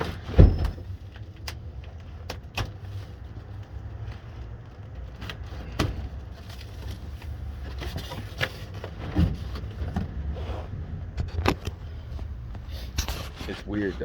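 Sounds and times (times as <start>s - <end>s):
knocks and scrapes from box handling: 5.6s - 13.9s
steady low rumble: 9.6s - 14.0s.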